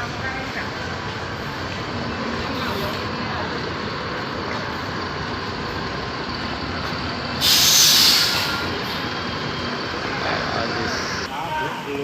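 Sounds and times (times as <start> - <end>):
bus engine running: 0.0 - 11.3
compressed air hiss: 7.4 - 9.0.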